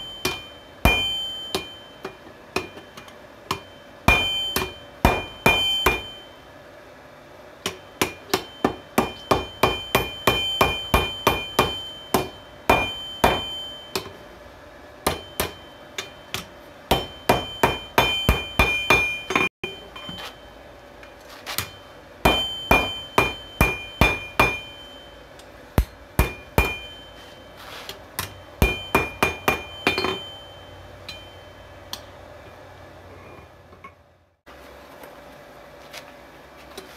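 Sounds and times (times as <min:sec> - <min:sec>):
anvil ringing: 0:00.0 - 0:06.4, 0:07.6 - 0:14.2, 0:15.0 - 0:20.6, 0:21.5 - 0:27.6, 0:28.2 - 0:32.1
hammer striking metal on anvil: 0:00.0 - 0:06.4, 0:07.6 - 0:14.2, 0:15.0 - 0:20.6, 0:21.5 - 0:32.2.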